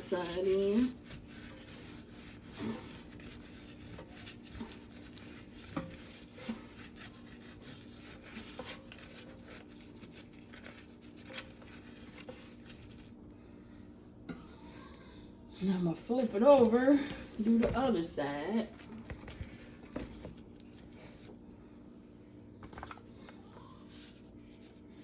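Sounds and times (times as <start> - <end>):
gloved hands rubbing meat: 0.0 - 13.2, 18.6 - 21.3.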